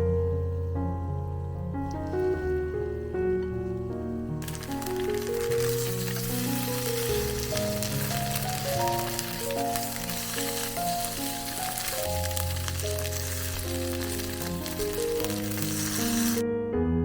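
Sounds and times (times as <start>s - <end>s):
food sizzling in a pan: 4.4s - 16.4s.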